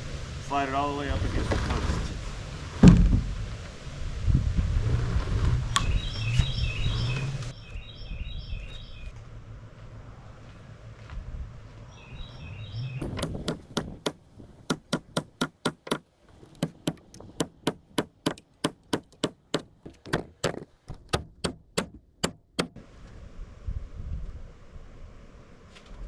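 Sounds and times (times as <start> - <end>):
hammer striking: 13.0 - 22.8.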